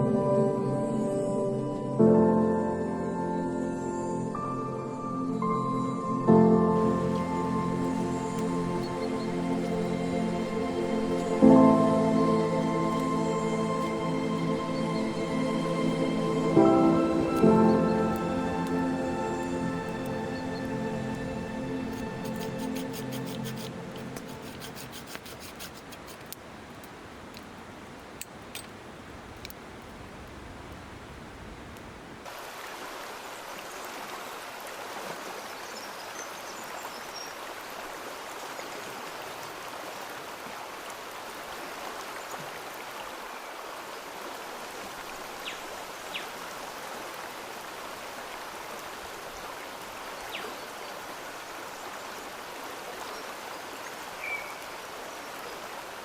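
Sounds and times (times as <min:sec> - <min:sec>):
running water: 0:06.8 - 0:56.0
small clicks: 0:21.9 - 0:32.2.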